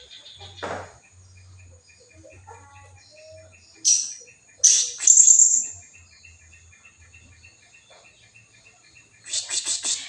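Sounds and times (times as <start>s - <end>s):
thin steady high tone: 1.4s - 6.4s
shrill high-pitched bird chirps: 3.0s - 5.9s.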